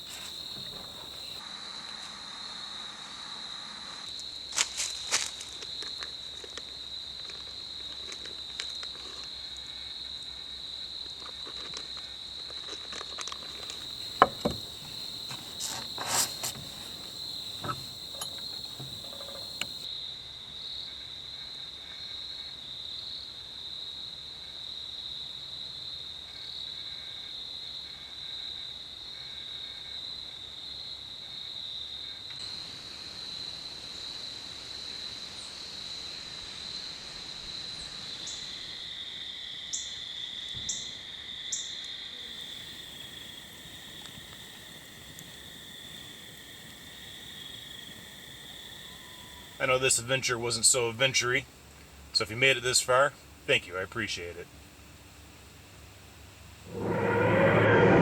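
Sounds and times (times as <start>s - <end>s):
crickets chirping: 0.0s - 58.0s
knocks and clicks: 14.2s - 15.0s.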